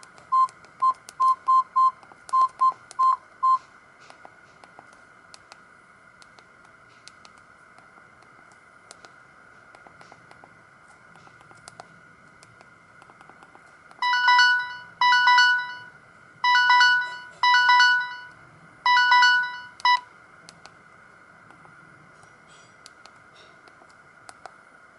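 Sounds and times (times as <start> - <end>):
low hum: 0.0 - 24.9
phone ringtone beeping melody: 14.0 - 18.3, 18.9 - 20.0.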